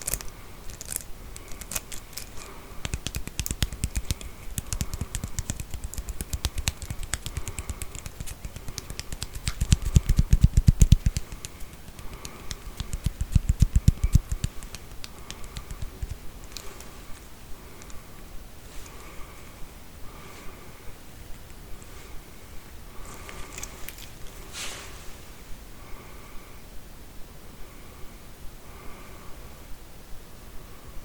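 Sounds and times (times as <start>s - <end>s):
comb teeth clicking: 0.0s - 17.0s.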